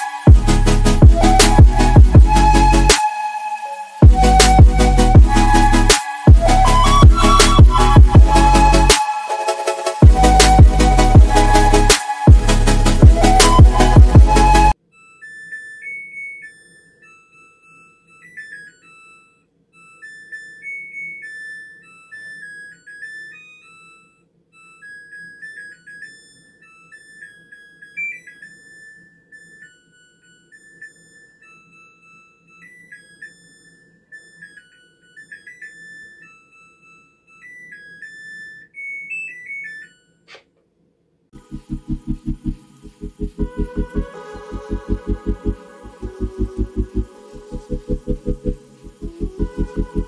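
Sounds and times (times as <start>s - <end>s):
washing machine beeper melody: 3.6s - 40.3s, 41.4s - 50.0s.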